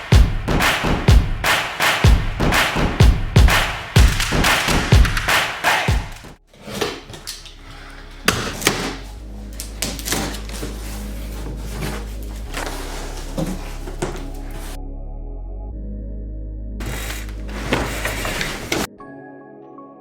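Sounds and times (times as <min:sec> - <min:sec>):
background music: 0:00.0 - 0:20.0.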